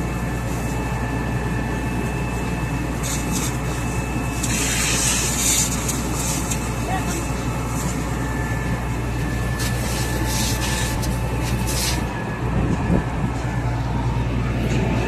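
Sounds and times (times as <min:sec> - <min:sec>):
diesel engine droning: 0:00.0 - 0:15.0
hiss bursts: 0:03.0 - 0:06.7, 0:09.6 - 0:12.1.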